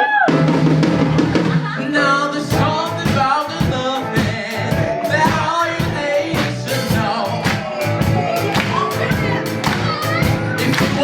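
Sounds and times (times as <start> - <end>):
drum kit beat: 0.0 - 11.0
live band playing: 0.0 - 11.0
person singing: 1.7 - 11.0.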